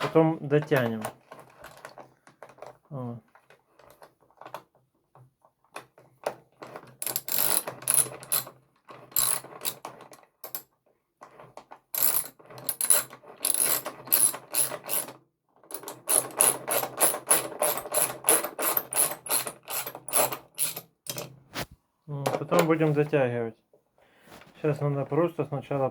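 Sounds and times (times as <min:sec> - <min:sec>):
ratchet wrench clicking: 0:07.0 - 0:08.4, 0:12.8 - 0:15.0.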